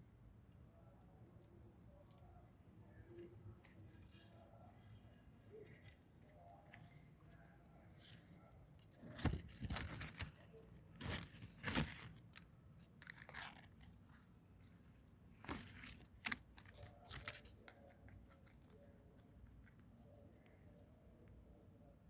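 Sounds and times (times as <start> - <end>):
dry leaves and twigs crunching: 9.0 - 12.4.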